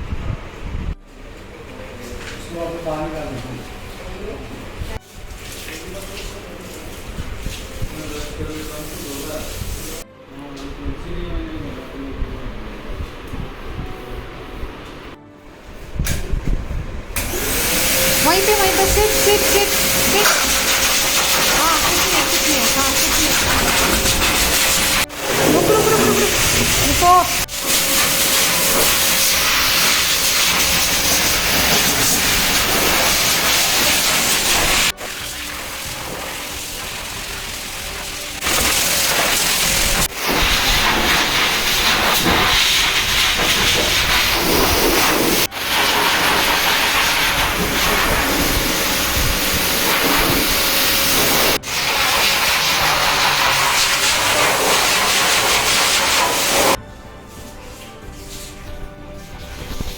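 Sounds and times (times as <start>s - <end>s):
shower spray hissing: 5.0s - 10.0s, 17.2s - 56.8s.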